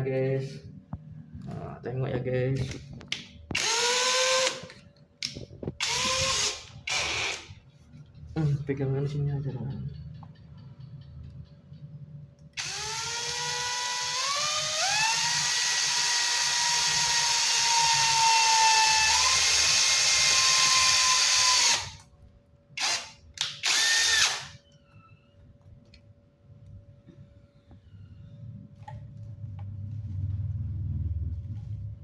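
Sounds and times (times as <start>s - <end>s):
electric drill whining: 3.6s - 4.7s, 5.8s - 7.5s, 12.6s - 22.0s, 22.8s - 24.6s.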